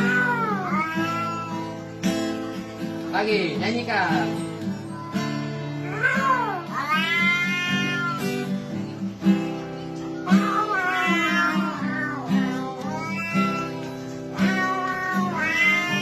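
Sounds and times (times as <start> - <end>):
cat meowing: 0.0 - 2.4, 4.6 - 8.8, 10.2 - 16.0
plucked acoustic guitar: 0.0 - 16.0.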